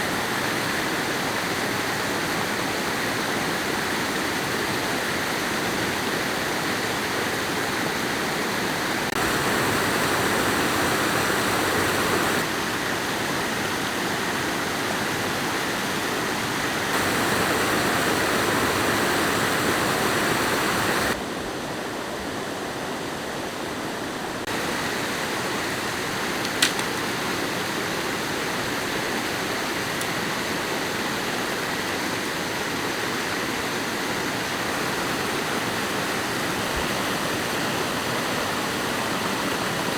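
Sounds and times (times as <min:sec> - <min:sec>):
rushing water: 0:00.0 - 0:39.9
sharp click: 0:26.4 - 0:27.0.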